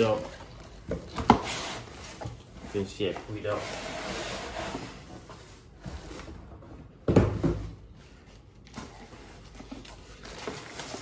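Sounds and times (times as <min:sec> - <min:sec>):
cardboard packaging handled: 0:08.1 - 0:11.0.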